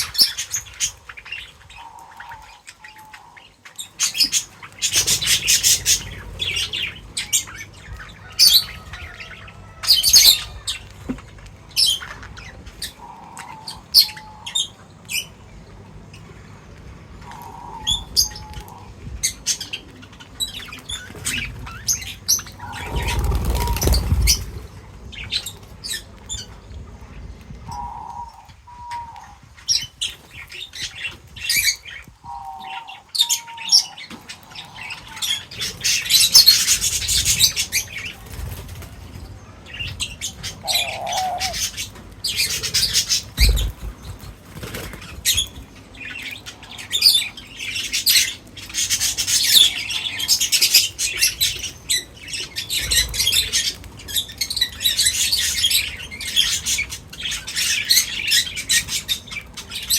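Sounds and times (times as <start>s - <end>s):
birds chirping: 0.0s - 59.9s
birds fluttering wings: 3.6s - 13.0s, 19.8s - 27.5s, 34.1s - 46.4s.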